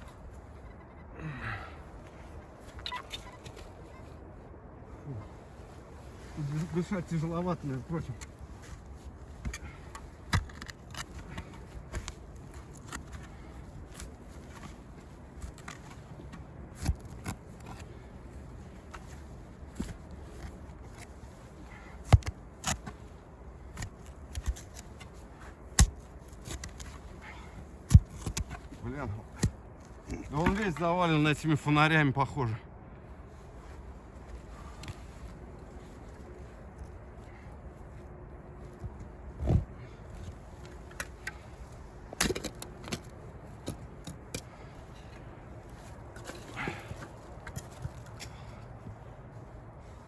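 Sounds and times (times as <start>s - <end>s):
shovel digging thud: 25.7s - 26.9s, 46.2s - 48.1s.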